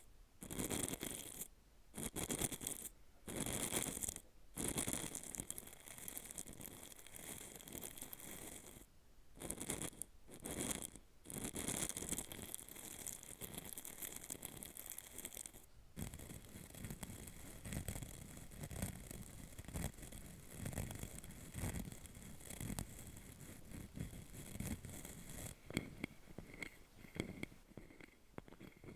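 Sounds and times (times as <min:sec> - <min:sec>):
tool scratching hard capsule: 0:16.0 - 0:28.9.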